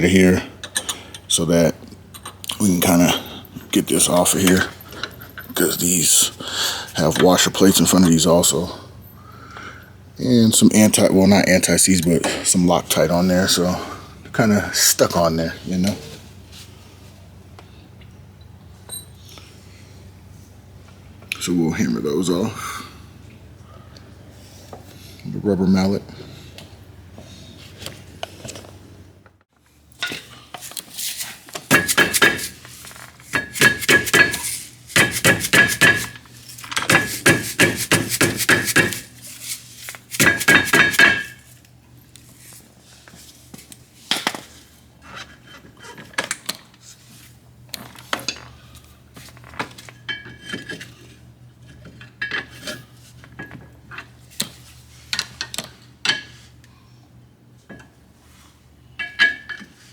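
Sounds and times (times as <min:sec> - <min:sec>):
light metal clinks: 0:02.1 - 0:06.3.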